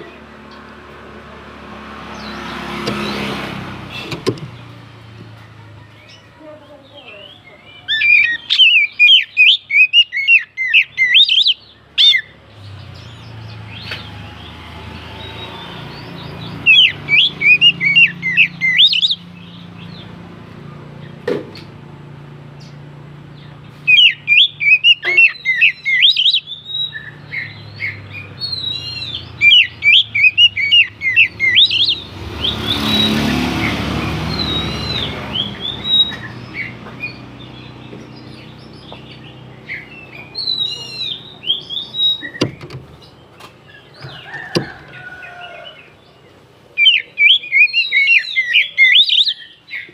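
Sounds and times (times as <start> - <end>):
bird singing whistled phrases: 7.0 - 12.3, 16.6 - 19.3, 23.9 - 33.2, 34.3 - 37.2, 39.7 - 42.5, 46.8 - 49.9.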